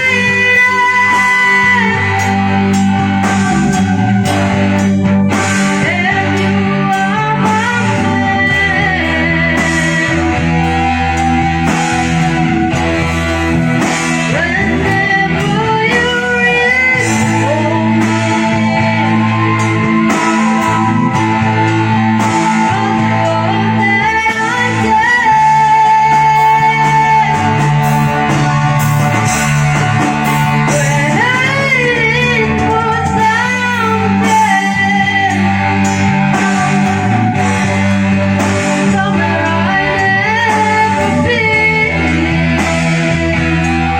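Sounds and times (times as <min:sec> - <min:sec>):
bass line: 0:00.0 - 0:43.9
bending lead melody: 0:00.0 - 0:43.9
electric guitar: 0:00.0 - 0:43.9
drum beat: 0:10.8 - 0:22.9, 0:27.1 - 0:31.6.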